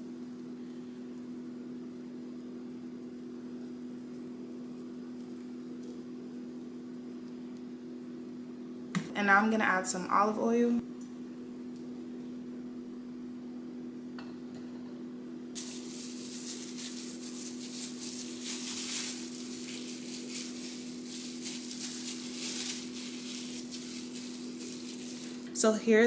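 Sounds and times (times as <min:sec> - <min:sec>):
steady low hum: 0:00.0 - 0:26.0
wet rubbing and squishing: 0:15.6 - 0:25.6.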